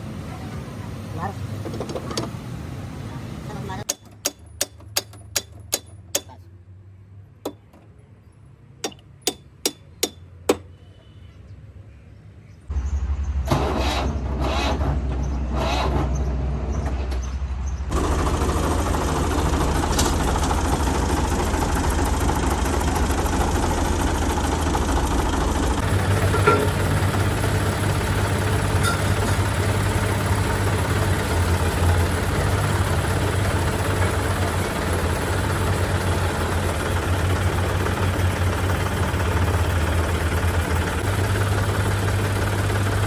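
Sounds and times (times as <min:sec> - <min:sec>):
grass cutter engine running: 0:17.9 - 0:43.0.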